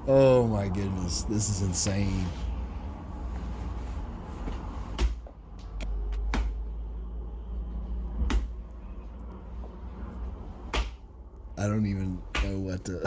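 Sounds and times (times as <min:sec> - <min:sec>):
low steady hum: 0:00.0 - 0:13.0
sharp knocks: 0:12.4 - 0:12.6.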